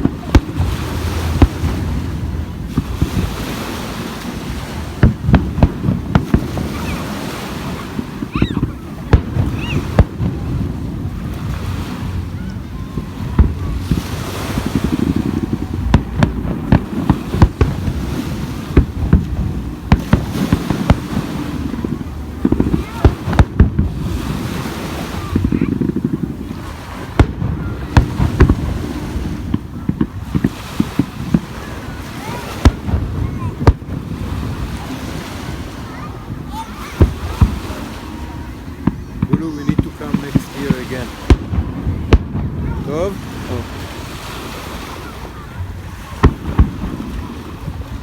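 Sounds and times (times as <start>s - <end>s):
low rumble: 0.0s - 6.7s
firework whistles: 6.1s - 10.2s
firework shells bursting: 38.8s - 43.2s.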